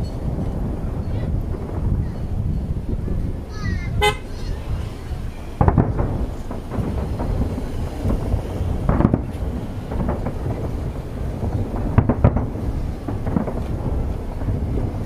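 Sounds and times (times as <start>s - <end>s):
fireworks booming: 0.0s - 15.0s
sharp firework bangs: 0.0s - 15.0s.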